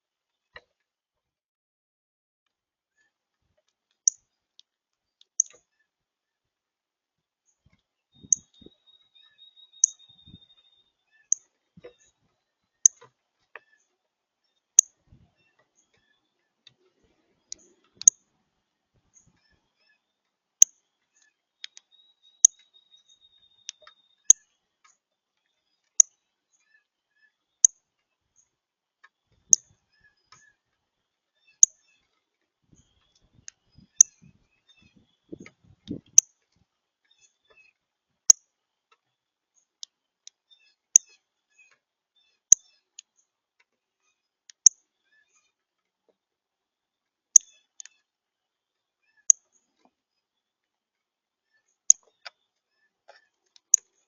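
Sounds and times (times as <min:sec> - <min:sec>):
bird trill: 0:08.1 - 0:13.0, 0:19.1 - 0:24.6.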